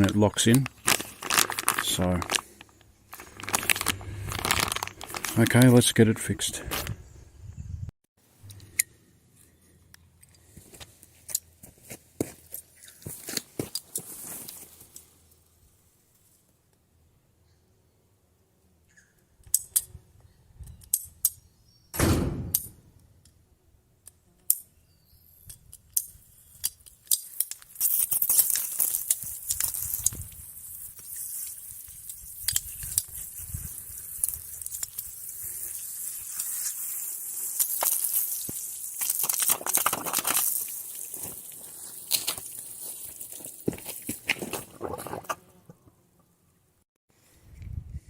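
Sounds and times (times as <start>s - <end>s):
heavy thump: 22.0s - 22.6s
plastic pipe clicks and scrapes: 37.6s - 40.6s.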